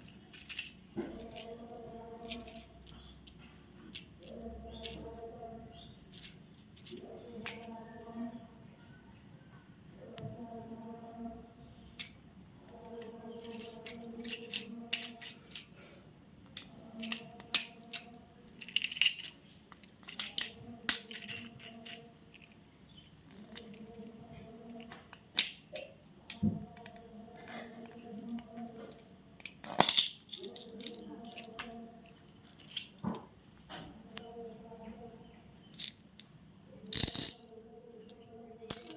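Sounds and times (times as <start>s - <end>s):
small items rattling: 0.0s - 5.1s, 6.0s - 7.7s, 12.9s - 15.8s, 16.4s - 24.1s, 27.7s - 31.6s, 32.3s - 33.2s, 35.8s - 38.9s.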